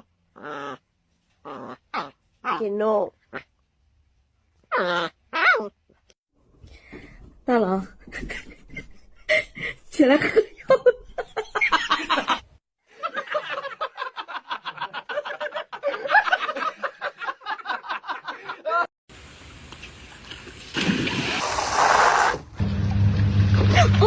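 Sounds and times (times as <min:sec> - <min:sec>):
people speaking: 0:10.0 - 0:10.4
people laughing: 0:10.2 - 0:18.9.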